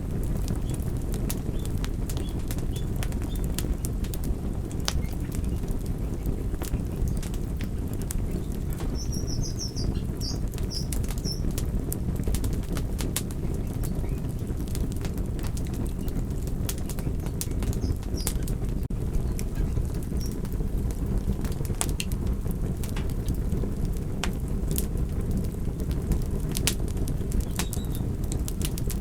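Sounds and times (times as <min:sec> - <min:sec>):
wood fire crackling: 0:00.0 - 0:29.0
sharp pops and snaps: 0:07.0 - 0:19.5, 0:27.4 - 0:29.0.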